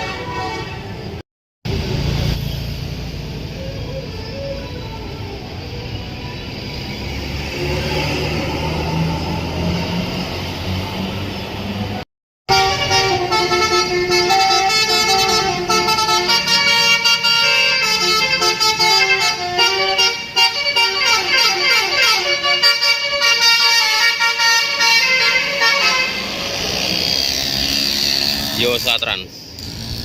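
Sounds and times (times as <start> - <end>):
bus horn playing melody: 0.0 - 1.0, 12.5 - 27.0.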